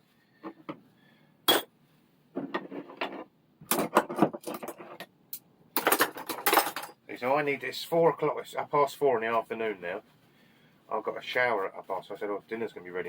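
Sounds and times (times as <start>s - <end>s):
metal tools clinking and knocking: 5.8s - 7.0s.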